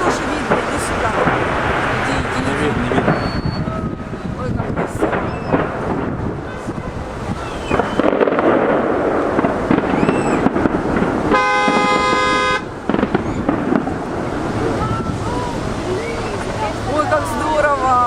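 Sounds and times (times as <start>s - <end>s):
fireworks bangs and crackling: 0.0s - 18.0s
steady horn blast: 11.3s - 12.7s.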